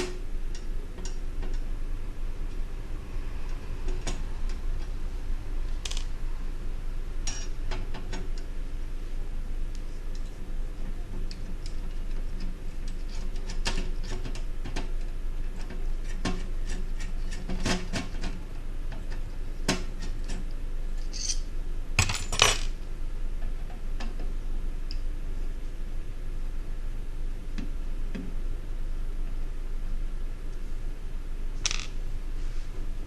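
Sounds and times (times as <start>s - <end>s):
steady low hum: 0.0s - 33.0s
small metal clicks and clinks: 21.0s - 21.4s
rattle of metal clinks: 21.0s - 22.6s.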